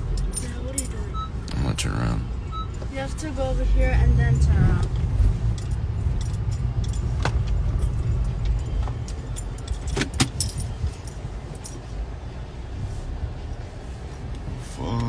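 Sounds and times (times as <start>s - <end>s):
car cabin low rumble: 0.0s - 15.0s
sharp clicks and rattles: 4.4s - 11.8s.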